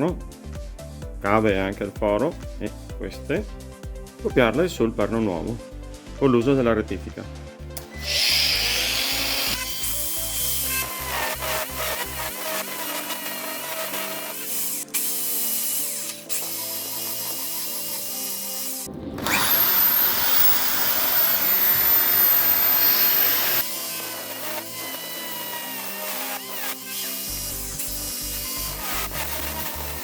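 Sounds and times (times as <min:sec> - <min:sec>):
background music: 0:00.0 - 0:30.0
die grinder whining: 0:07.8 - 0:30.0.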